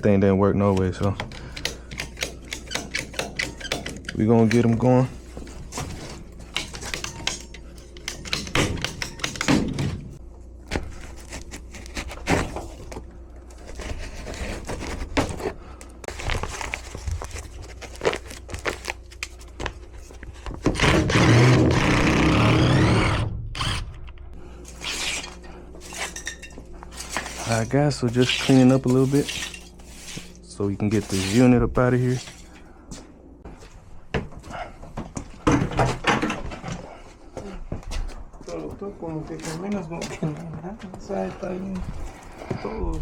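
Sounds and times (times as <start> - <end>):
tools and parts knocking: 1.0 - 4.7, 6.5 - 10.1.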